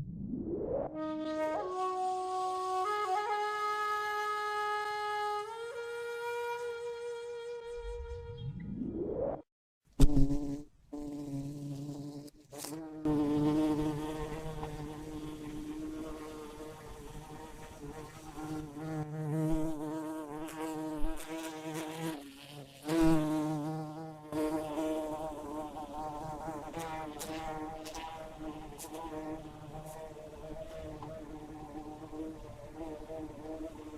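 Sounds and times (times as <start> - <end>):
bumblebee buzzing: 10.0 - 33.9.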